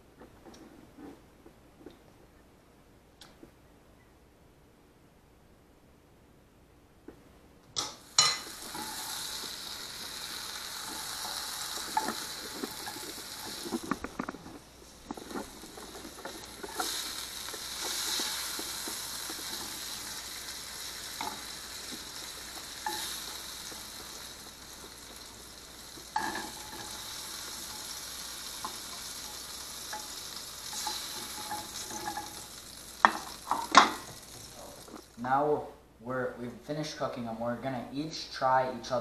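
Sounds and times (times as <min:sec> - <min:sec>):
fish sizzling in hot oil: 0:07.8 - 0:35.2.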